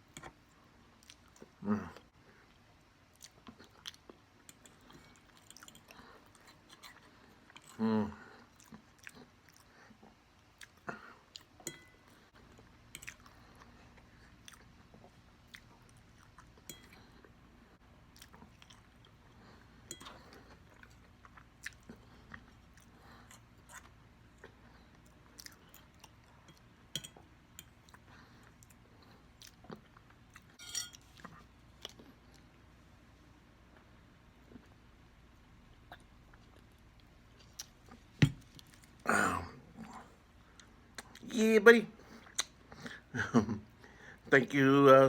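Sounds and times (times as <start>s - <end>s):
chewing food: 0.0s - 17.3s, 18.0s - 32.6s, 35.8s - 39.0s.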